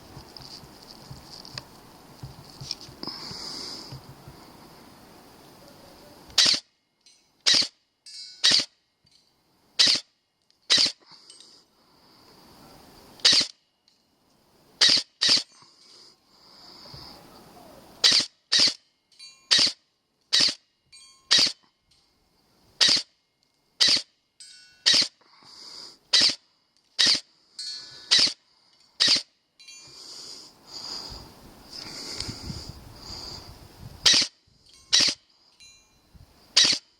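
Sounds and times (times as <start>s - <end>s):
airsoft gun shots: 14.8s - 15.5s, 22.8s - 23.1s.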